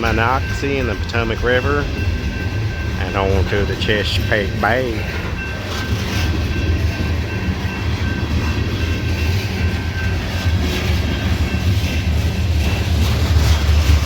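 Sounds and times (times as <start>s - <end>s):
faint steady high tones: 0.0s - 10.5s
train wheels rumbling on rails: 0.0s - 14.0s.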